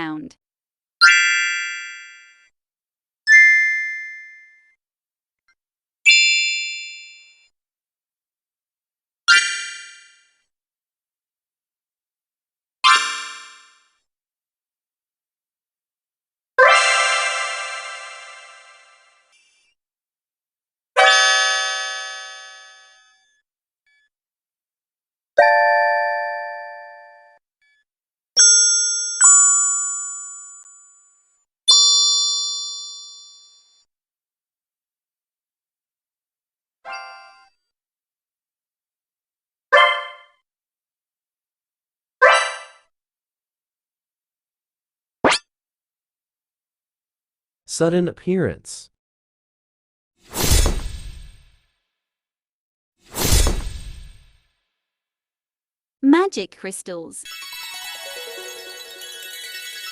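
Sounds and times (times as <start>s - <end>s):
magic chime ding: 57.3s - 59.9s.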